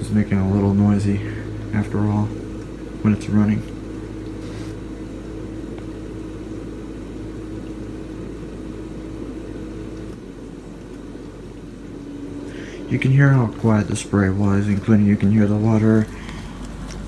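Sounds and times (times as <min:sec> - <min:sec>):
water spraying: 0:00.0 - 0:04.9
dishwasher pump humming: 0:00.0 - 0:17.0.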